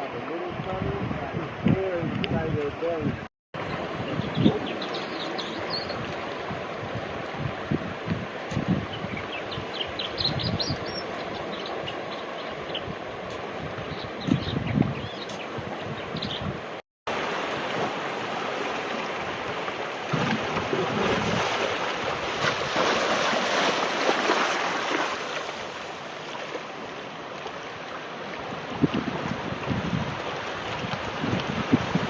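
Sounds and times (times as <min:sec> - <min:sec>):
sea water rushing and splashing: 0:00.0 - 0:32.0
wind buffeting microphone: 0:00.3 - 0:16.8, 0:19.2 - 0:24.3, 0:28.4 - 0:32.0.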